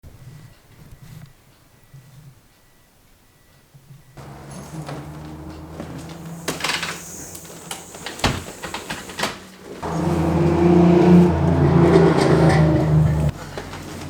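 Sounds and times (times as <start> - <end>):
vehicle engine running loudly: 4.2 - 8.3, 9.8 - 14.0
low hum: 9.8 - 13.4.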